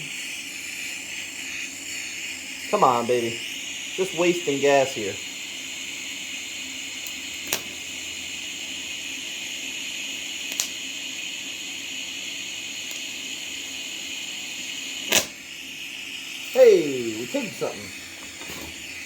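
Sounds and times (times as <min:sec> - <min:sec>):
faint welder hum: 0:00.0 - 0:19.0
gas hissing from welding torch: 0:00.0 - 0:19.0
short sharp clicks: 0:15.1 - 0:15.4.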